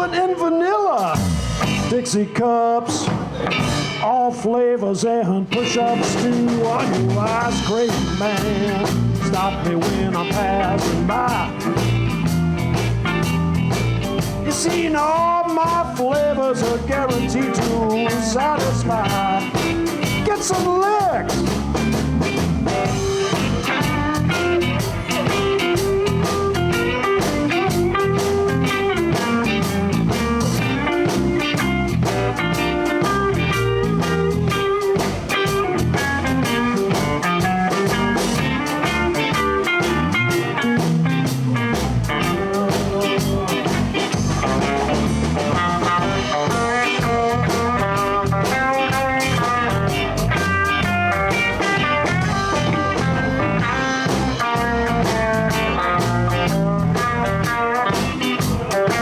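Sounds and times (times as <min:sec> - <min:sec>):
drum kit: 0:00.0 - 0:04.5, 0:05.4 - 0:59.0
bass guitar: 0:00.0 - 0:59.0
electric guitar solo: 0:17.2 - 0:59.0.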